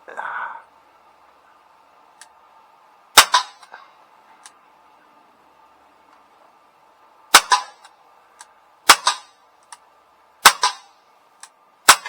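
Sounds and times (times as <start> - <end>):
pellet pistol shots: 7.3 - 7.9, 8.8 - 9.3, 10.4 - 10.9.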